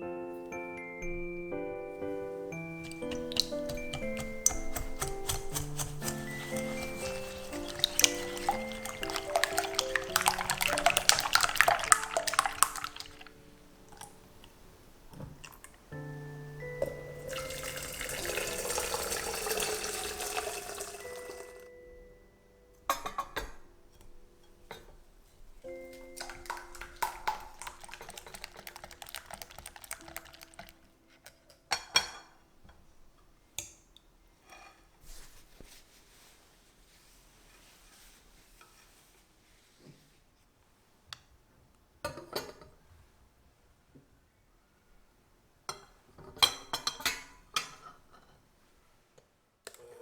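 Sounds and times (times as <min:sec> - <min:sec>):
background music of held notes: 0:00.0 - 0:15.0, 0:15.8 - 0:25.1, 0:25.7 - 0:31.2
utensils tapping against a bowl: 0:02.5 - 0:14.6, 0:16.6 - 0:21.7, 0:25.7 - 0:30.8
kitchen work clicking and pattering: 0:02.5 - 0:16.0, 0:16.8 - 0:21.7, 0:24.7 - 0:33.8, 0:45.7 - 0:48.4.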